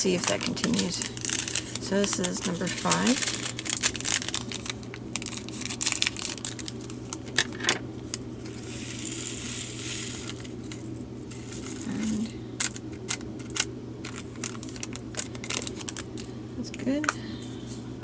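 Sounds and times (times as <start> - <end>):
beads pouring into plastic container: 8.6 - 10.5.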